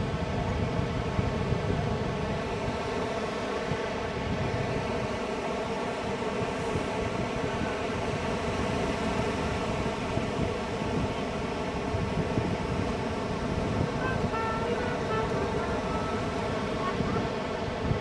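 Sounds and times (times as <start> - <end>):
wind: 0.0 - 18.0
ocean surf: 2.0 - 18.0.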